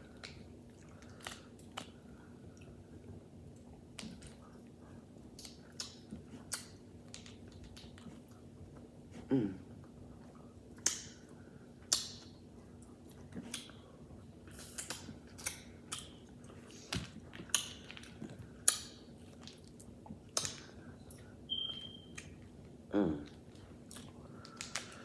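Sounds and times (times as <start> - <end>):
wet chewing and smacking: 0.0 - 9.2, 9.8 - 25.0.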